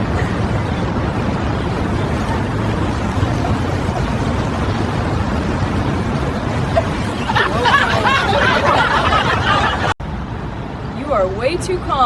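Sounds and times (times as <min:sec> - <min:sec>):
road traffic rumble: 0:00.0 - 0:12.0
wavering high vocal sounds: 0:01.6 - 0:09.6.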